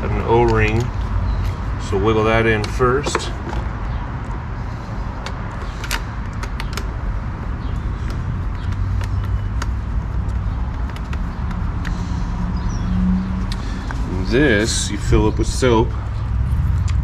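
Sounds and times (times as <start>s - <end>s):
steady low rumble: 0.0s - 17.0s
plastic parts clicking and tapping: 5.2s - 7.0s, 7.6s - 12.0s.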